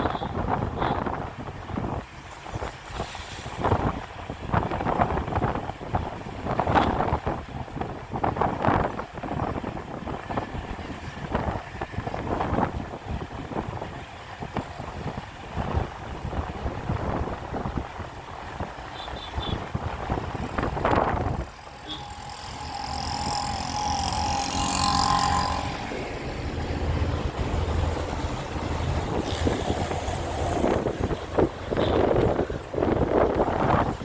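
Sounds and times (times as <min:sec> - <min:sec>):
traffic on a wet road: 0:00.0 - 0:34.0
wind buffeting the microphone: 0:00.0 - 0:34.0.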